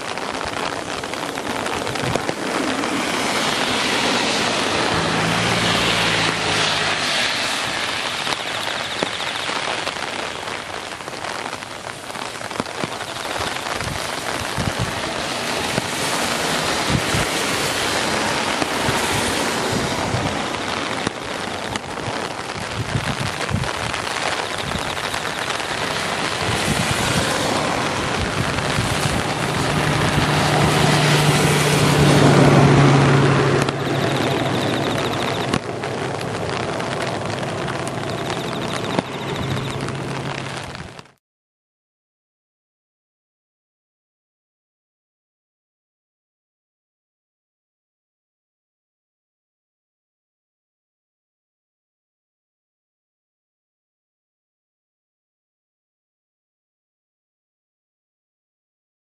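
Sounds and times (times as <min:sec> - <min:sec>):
heavy rain hissing: 0:00.0 - 0:41.2
raindrops knocking close by: 0:00.0 - 0:41.2
low engine hum: 0:26.0 - 0:40.6.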